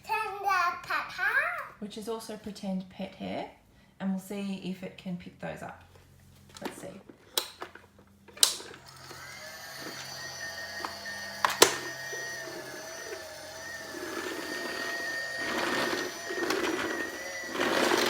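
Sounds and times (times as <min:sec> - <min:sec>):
toy vacuum cleaner motor whine: 0:08.4 - 0:18.0.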